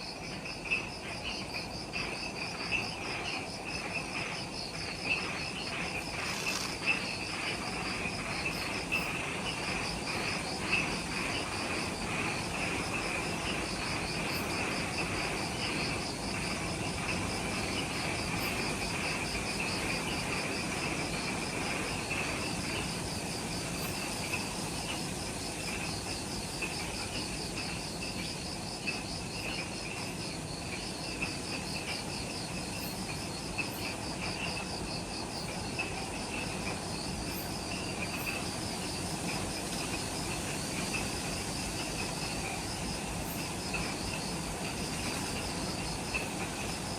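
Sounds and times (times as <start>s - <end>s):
low buzzing insect trill: 0.0s - 11.9s
high pulsing insect trill: 0.0s - 46.9s.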